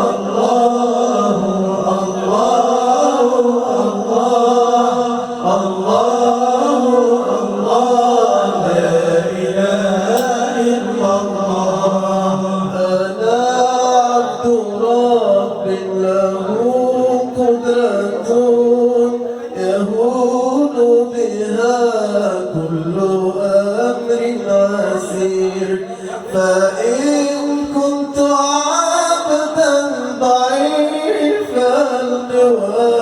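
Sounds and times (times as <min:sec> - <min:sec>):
voices chanting: 0:00.0 - 0:12.2
low held vocal drone: 0:00.0 - 0:33.0.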